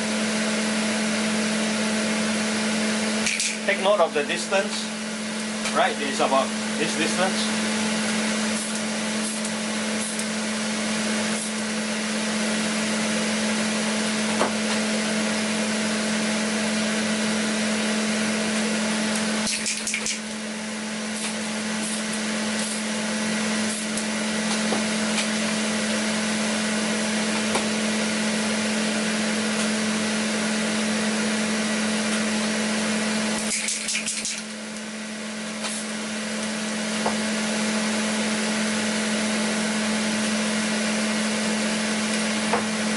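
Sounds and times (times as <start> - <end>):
exhaust fan humming: 0.0 - 42.9.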